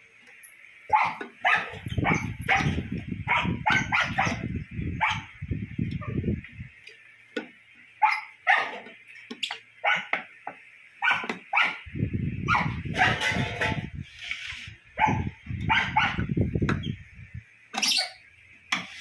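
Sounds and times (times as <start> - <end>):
dog barking and yelping: 0.9 - 5.3, 8.0 - 8.9, 9.8 - 10.2, 11.0 - 13.8, 15.0 - 16.3
low rough buzzing: 11.8 - 17.6.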